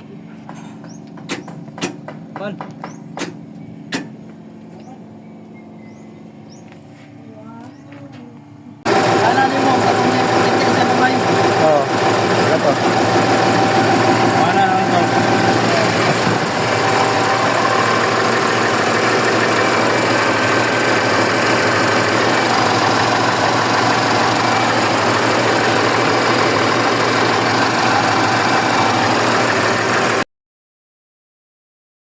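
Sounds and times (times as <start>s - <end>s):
small generator engine idling: 8.8s - 30.2s.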